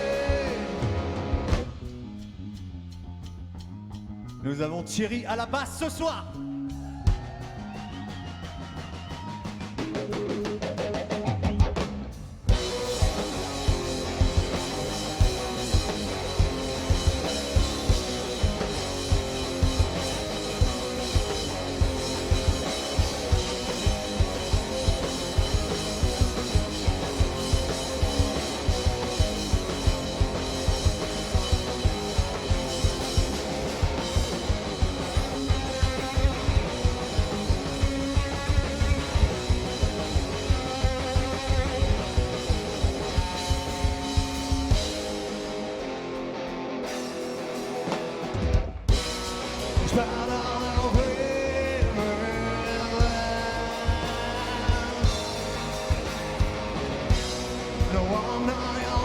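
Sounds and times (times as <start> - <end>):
rock band playing: 0.0 - 59.0
drum hits: 11.6 - 45.2.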